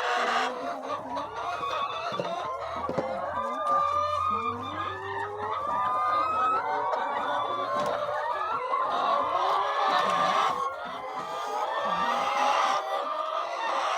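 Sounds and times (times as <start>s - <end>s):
chickens clucking: 0.0s - 13.9s.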